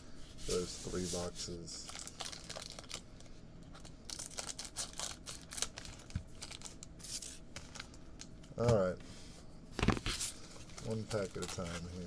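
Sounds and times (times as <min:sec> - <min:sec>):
plastic wrapping torn and crinkled: 0:01.8 - 0:03.1, 0:03.7 - 0:08.4, 0:10.8 - 0:12.0.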